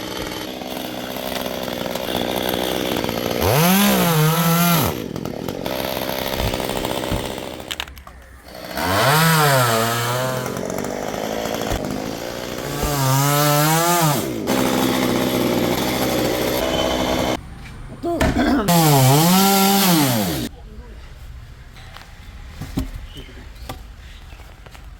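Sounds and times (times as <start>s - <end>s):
chainsaw cutting tree trunk: 0.0s - 7.9s, 8.5s - 17.4s, 18.7s - 20.5s.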